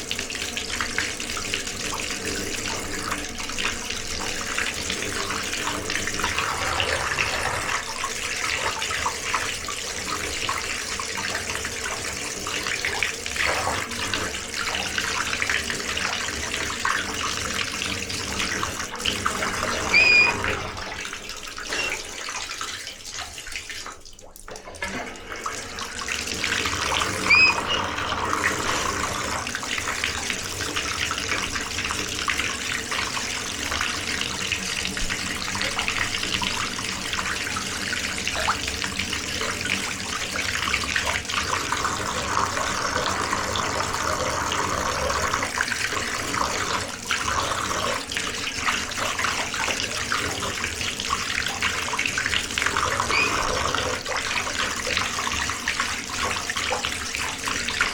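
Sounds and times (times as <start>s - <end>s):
water running from a tap: 0.0s - 57.9s
short high squeaks: 19.7s - 20.6s, 21.7s - 22.1s, 27.2s - 28.0s, 53.0s - 53.6s.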